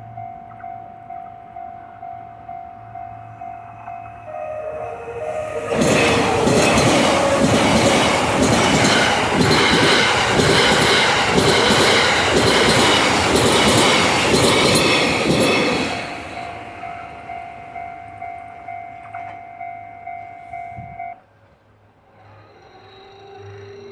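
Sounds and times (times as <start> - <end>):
level crossing warning bell: 0.0 - 21.2
train wheels knocking: 5.1 - 19.6.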